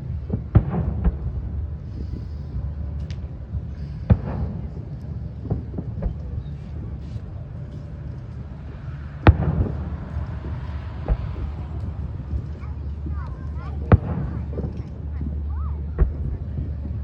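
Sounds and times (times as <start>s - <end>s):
low rumble: 0.0s - 17.0s
faint fireworks pops: 0.2s - 17.0s
fireworks bangs: 0.3s - 1.6s, 9.2s - 17.0s.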